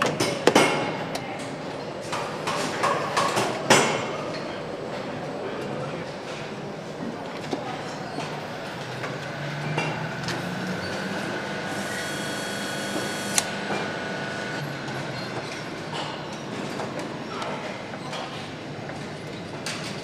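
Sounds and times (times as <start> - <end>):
steady mechanical hum: 0.0 - 20.0
sharp click: 13.3 - 13.5.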